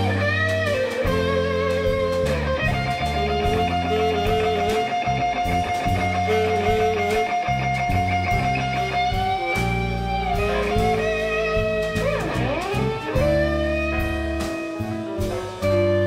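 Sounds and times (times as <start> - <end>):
electric guitar sustained notes: 0.0 - 16.0
live electric blues: 0.0 - 16.0.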